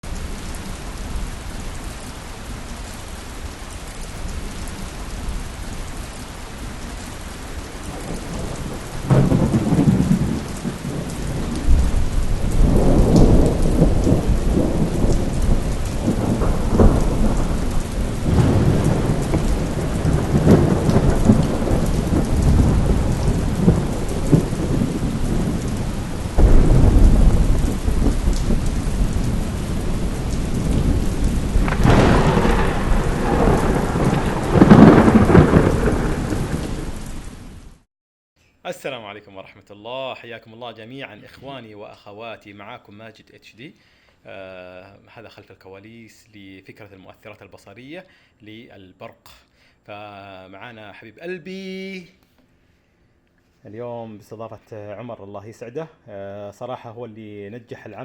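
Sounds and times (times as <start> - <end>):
rolling thunder: 0.0 - 37.8
steady rain: 0.0 - 37.9
loud thunder crack: 7.4 - 37.5.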